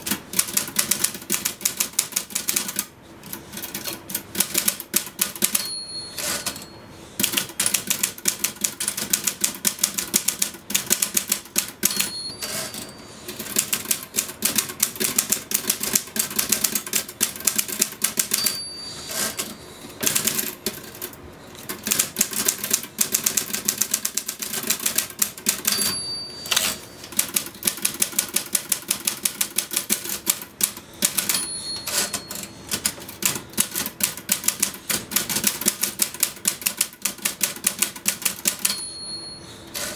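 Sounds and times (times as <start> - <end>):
typewriter keys clacking: 0.0 - 6.6, 7.2 - 38.8
typewriter carriage return: 0.0 - 38.9
typewriter margin bell ding: 5.3 - 6.8, 11.1 - 13.2, 18.0 - 19.6, 25.5 - 27.4, 31.0 - 32.9, 38.3 - 39.9.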